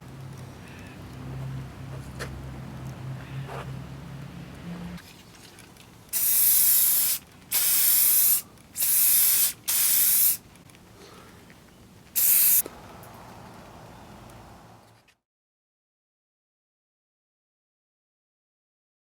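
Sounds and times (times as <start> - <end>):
pressurised spray hissing: 6.2 - 10.4, 12.2 - 12.6.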